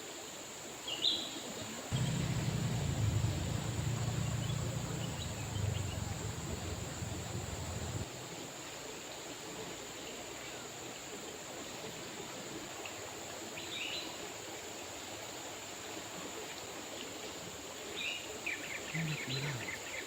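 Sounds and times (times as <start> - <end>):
river water flowing: 1.9 - 8.0
bird chirps: 2.0 - 8.0.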